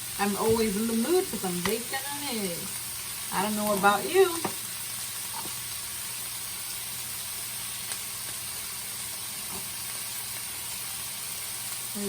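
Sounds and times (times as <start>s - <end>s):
food sizzling in a frying pan: 0.0s - 12.0s.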